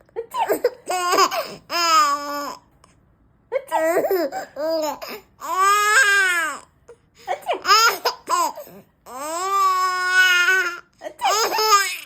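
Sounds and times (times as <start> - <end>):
baby crying: 7.3 - 12.0.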